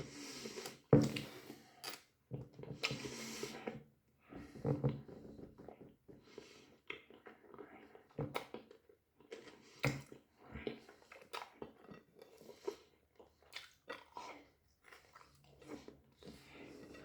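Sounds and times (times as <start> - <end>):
person chewing food: 5.6 - 17.0.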